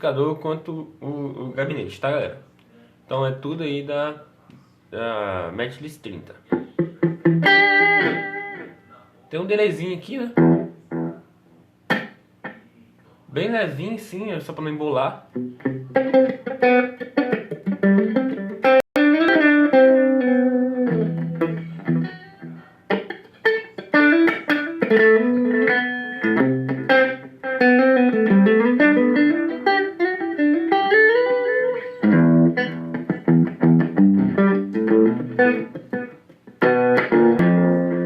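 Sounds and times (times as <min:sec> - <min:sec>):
electric guitar melody and chords: 0:06.5 - 0:08.9, 0:10.4 - 0:11.3, 0:11.9 - 0:12.7, 0:15.3 - 0:38.0.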